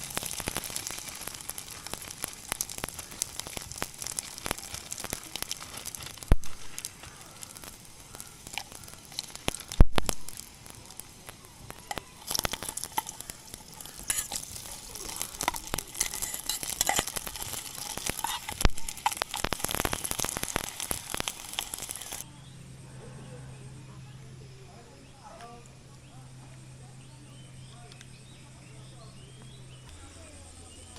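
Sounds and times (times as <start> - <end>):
food sizzling in a pan: 0.0 - 22.2.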